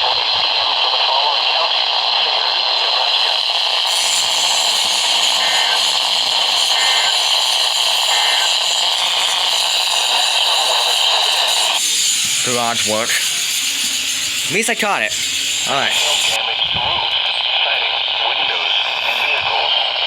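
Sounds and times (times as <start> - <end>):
radio static hiss: 0.0 - 13.5, 14.5 - 20.0
two-tone data bursts: 2.7 - 16.5.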